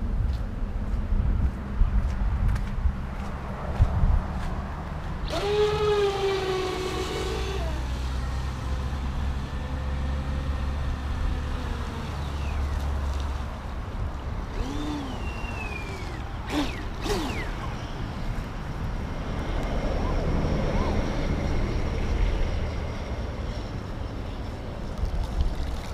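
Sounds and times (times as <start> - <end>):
wind rumble on microphone: 0.0 - 25.9
electric motor whining: 5.2 - 13.1, 14.4 - 18.5.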